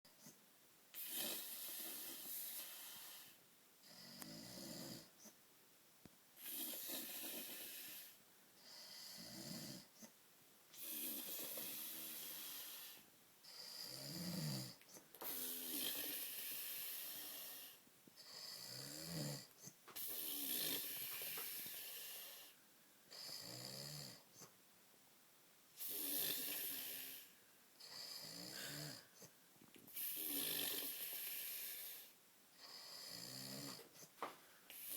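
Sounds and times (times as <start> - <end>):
man snoring heavily: 1.0 - 3.3, 3.9 - 5.1, 6.4 - 8.1, 8.7 - 9.9, 10.8 - 19.5, 20.1 - 22.5, 23.1 - 24.2, 25.8 - 29.1, 30.0 - 33.8.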